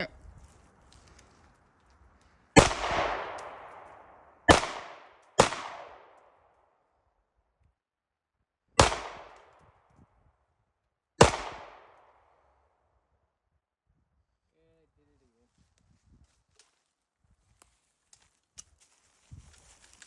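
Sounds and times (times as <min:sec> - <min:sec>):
handgun shots echoing: 0:02.6 - 0:06.2, 0:08.8 - 0:09.5, 0:11.2 - 0:12.1.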